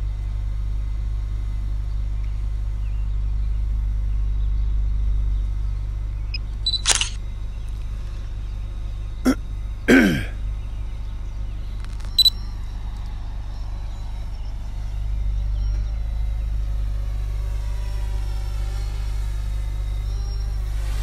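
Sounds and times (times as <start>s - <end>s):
electronic camera shutter: 6.7s - 7.2s, 11.8s - 12.4s.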